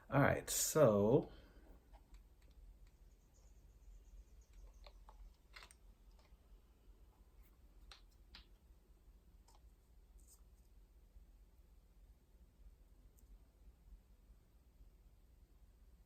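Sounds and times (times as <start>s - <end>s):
faint clicks of small objects: 7.4s - 8.7s.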